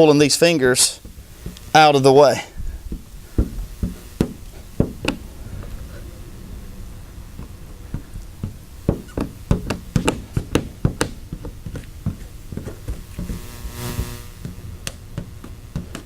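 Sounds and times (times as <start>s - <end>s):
short hiss: 12.7s - 14.6s.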